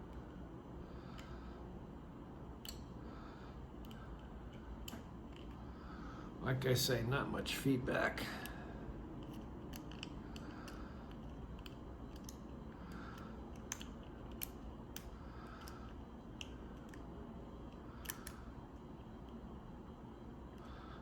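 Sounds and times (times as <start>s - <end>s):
lock pick clicking and scraping: 3.8s - 5.6s, 9.2s - 17.0s, 17.7s - 18.4s.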